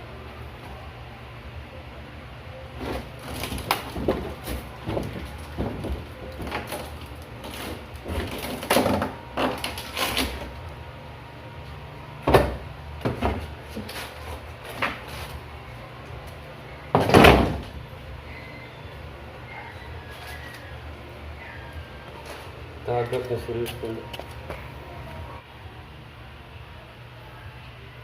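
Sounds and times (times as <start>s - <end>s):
cabinet being taken apart: 2.8s - 10.6s.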